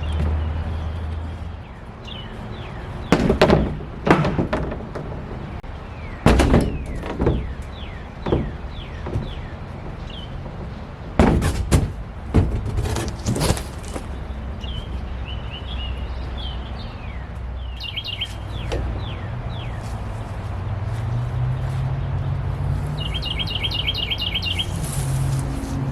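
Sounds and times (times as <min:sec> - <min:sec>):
small birds chirping: 0:00.0 - 0:03.4, 0:05.5 - 0:10.9, 0:13.4 - 0:20.5, 0:21.6 - 0:25.7
wooden boards knocking and thudding: 0:03.0 - 0:05.6, 0:06.2 - 0:14.2.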